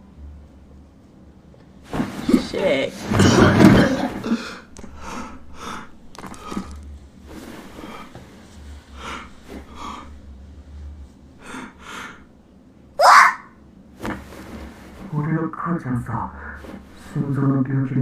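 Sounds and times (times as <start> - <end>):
faint low hum: 0.0 - 18.0
person breathing and gasping: 4.2 - 6.8, 7.7 - 8.2, 8.9 - 10.2, 11.4 - 12.3.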